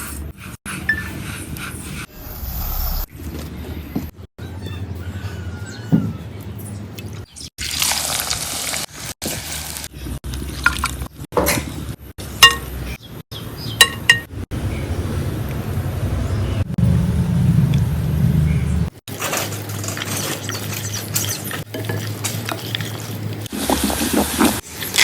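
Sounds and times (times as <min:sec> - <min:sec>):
low rumble: 0:02.1 - 0:03.2
utensils clinking against dishes: 0:12.4 - 0:12.8, 0:13.8 - 0:14.3.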